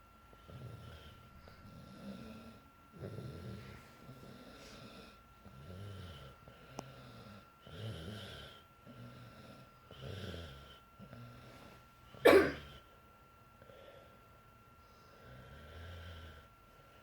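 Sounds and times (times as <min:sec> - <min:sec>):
girl snoring: 0:00.4 - 0:11.5, 0:15.0 - 0:16.5.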